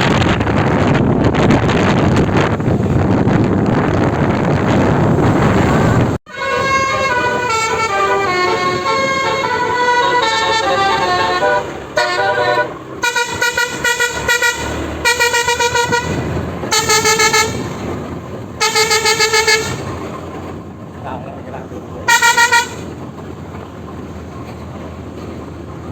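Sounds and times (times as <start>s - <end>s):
bus air horn playing a tune: 6.3s - 18.0s, 18.6s - 20.1s, 22.0s - 23.0s
fast stuttering horn toots: 6.3s - 18.0s, 18.6s - 20.2s, 22.0s - 23.0s.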